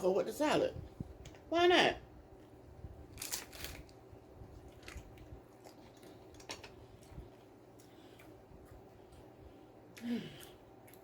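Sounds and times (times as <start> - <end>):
taco shell crunching: 3.1 - 8.4
chewing: 4.7 - 9.3, 9.9 - 11.0.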